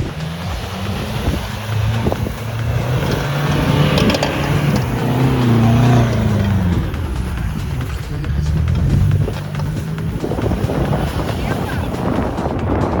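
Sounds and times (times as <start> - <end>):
off-road vehicle engine revving: 0.0 - 13.0.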